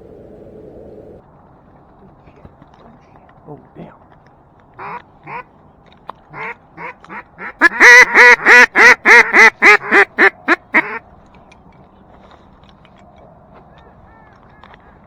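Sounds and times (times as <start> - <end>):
duck call quacking: 4.8 - 5.5, 6.3 - 11.0.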